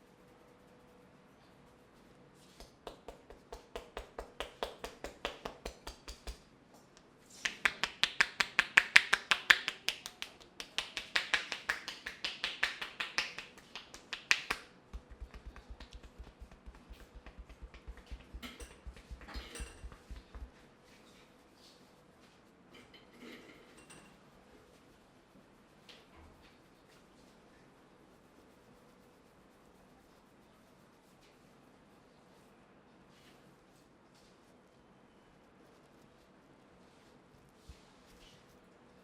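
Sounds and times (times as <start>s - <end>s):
sharp clicks: 14.0s - 20.5s.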